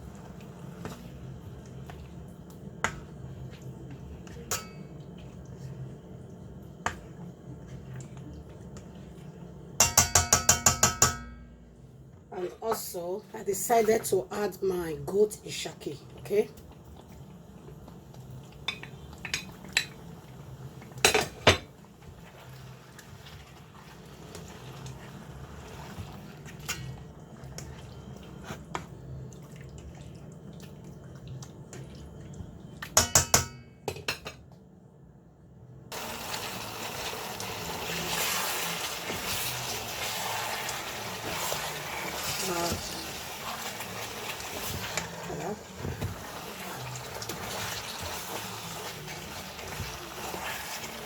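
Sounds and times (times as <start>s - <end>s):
utensils clinking against a pot: 4.2s - 5.0s, 9.8s - 11.5s, 32.9s - 34.4s.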